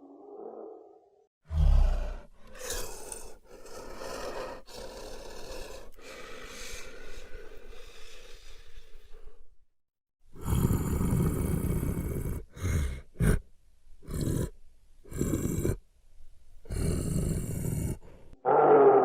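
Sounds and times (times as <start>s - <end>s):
monster growls and grunts: 1.5s - 5.9s, 10.4s - 13.4s, 14.0s - 15.8s, 16.7s - 19.0s.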